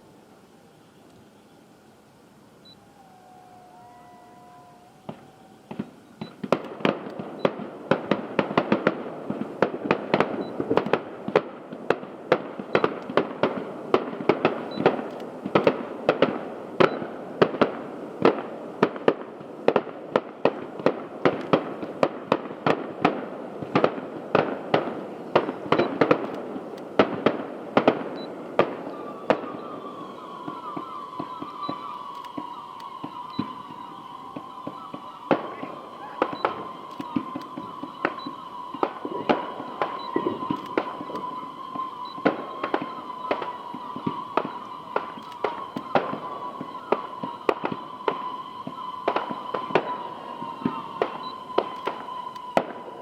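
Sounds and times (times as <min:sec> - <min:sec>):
fireworks banging: 0:03.3 - 0:53.0
falling whistling tone: 0:25.2 - 0:26.4, 0:28.0 - 0:53.0.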